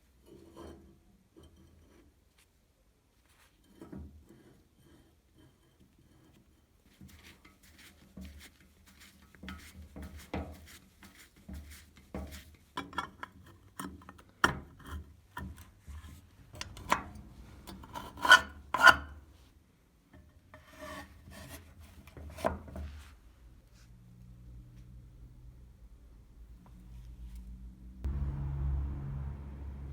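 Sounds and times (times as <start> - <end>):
grater parts scraping and rubbing: 14.8 - 19.2.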